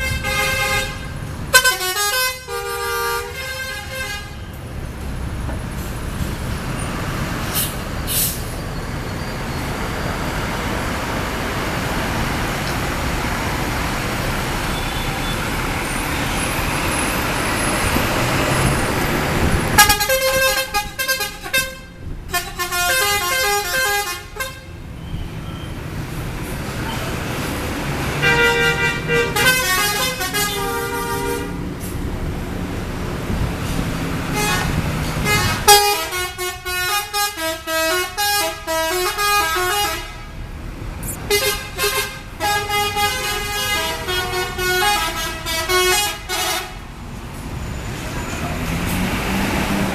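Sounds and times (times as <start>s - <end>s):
multi-tone bus air horns: 0.0s - 4.6s, 14.6s - 24.8s, 28.0s - 32.0s, 33.7s - 40.4s, 41.0s - 46.9s
engine noise: 0.0s - 49.9s.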